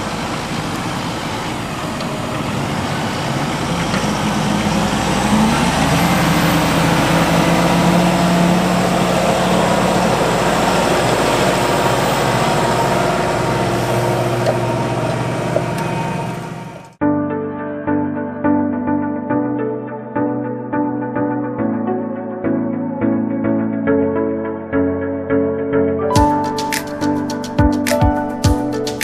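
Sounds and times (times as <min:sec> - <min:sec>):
tractor diesel engine running: 0:00.0 - 0:17.0.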